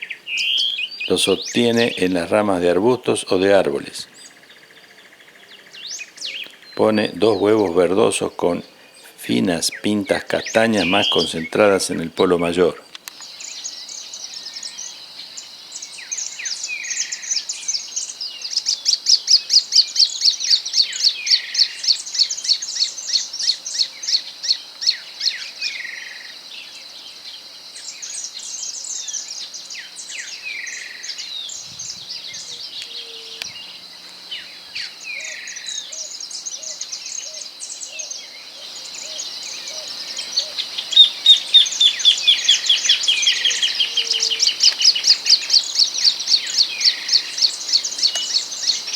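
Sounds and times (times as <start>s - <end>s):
songbirds trilling: 0.0s - 48.9s
insect drone: 13.1s - 48.9s
bird whistles: 38.9s - 48.9s.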